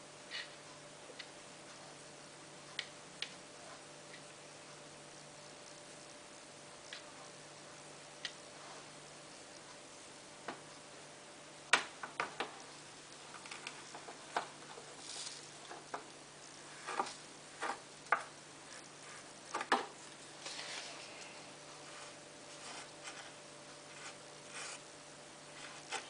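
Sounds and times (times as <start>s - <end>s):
faint steady hum: 0.0s - 26.0s
soft hisses: 8.3s - 10.1s, 14.6s - 17.8s, 18.6s - 25.9s.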